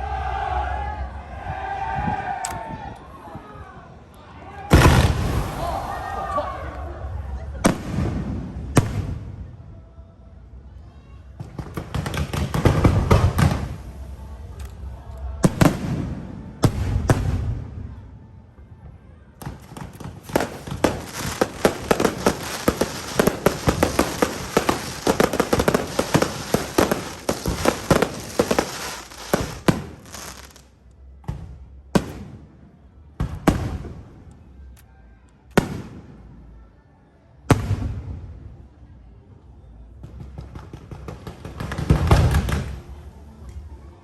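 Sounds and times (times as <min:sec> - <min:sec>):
fireworks crackling and banging: 0:04.7 - 0:09.6, 0:11.4 - 0:17.7, 0:19.4 - 0:32.5, 0:33.2 - 0:34.2, 0:40.0 - 0:42.9.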